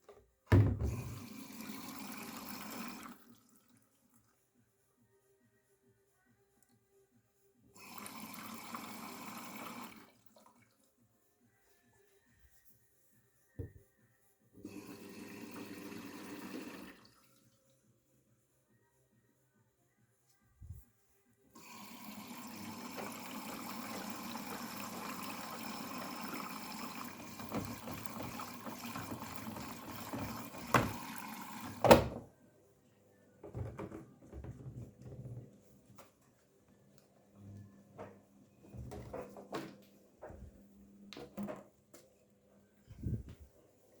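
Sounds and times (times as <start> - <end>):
water rushing into washing machine: 0.5 - 3.7, 7.8 - 10.5, 14.7 - 17.3, 21.6 - 32.2.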